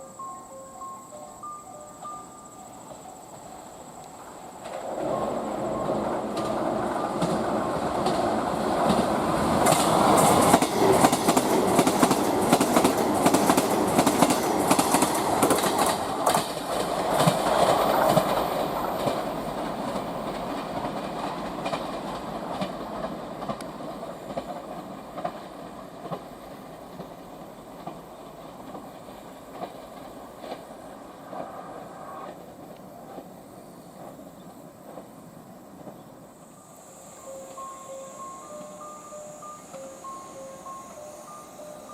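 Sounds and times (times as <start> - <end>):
train wheels clicking over rail joints: 2.8 - 31.6.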